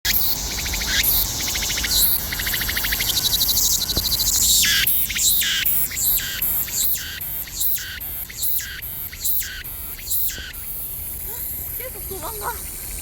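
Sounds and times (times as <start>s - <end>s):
cicadas buzzing in chorus: 0.1s - 13.0s.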